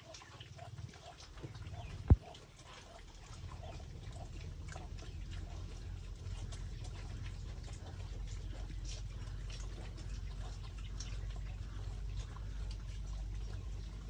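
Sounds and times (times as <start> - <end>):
pig chewing food: 0.0 - 14.0
low rumble: 3.2 - 14.0.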